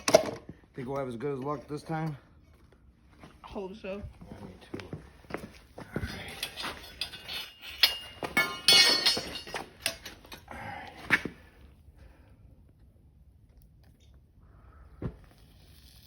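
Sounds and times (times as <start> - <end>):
metal casting gear clinking: 5.9 - 10.5.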